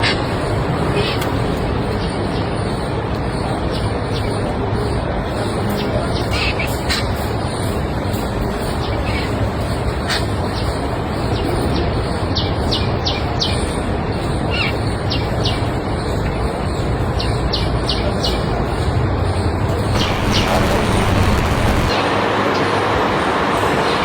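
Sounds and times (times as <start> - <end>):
steady rushing background noise: 19.3 - 24.0.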